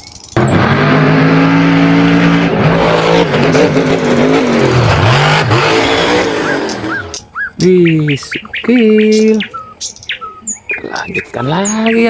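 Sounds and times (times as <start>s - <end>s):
monster truck engine revving: 0.4s - 7.2s.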